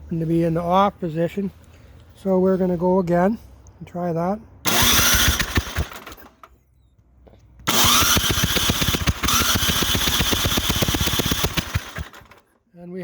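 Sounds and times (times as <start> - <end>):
electric starter cranking engine: 4.7 - 6.5, 7.7 - 12.5.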